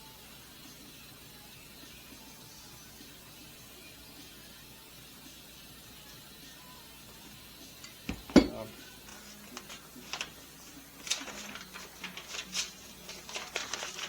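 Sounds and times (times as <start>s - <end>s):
metal tools clinking and knocking: 8.1s - 8.7s.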